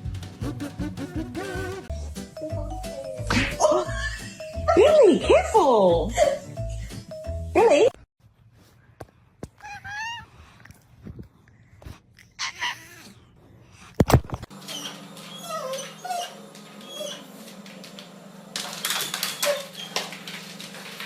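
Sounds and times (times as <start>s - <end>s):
dog whimpering and yipping: 9.6s - 10.3s, 14.7s - 17.3s, 19.2s - 20.0s.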